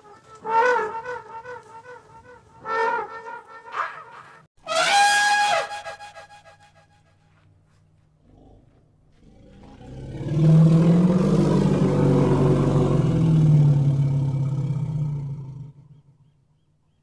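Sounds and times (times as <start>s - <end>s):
elephant roaring: 8.3s - 15.8s.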